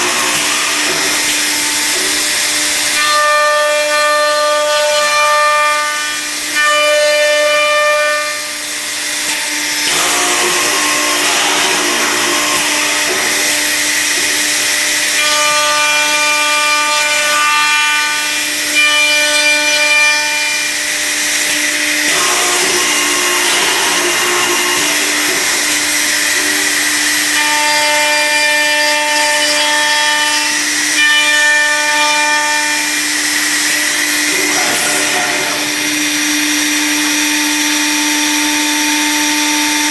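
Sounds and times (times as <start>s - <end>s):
machine motor hum and spindle whine: 5.6s - 39.9s
tool cutting into wood: 9.3s - 36.5s.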